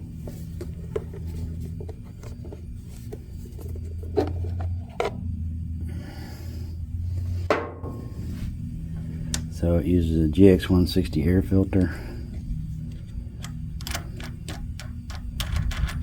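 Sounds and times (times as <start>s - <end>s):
engine parts scraping: 0.0s - 9.6s
steady low hum: 0.0s - 16.0s.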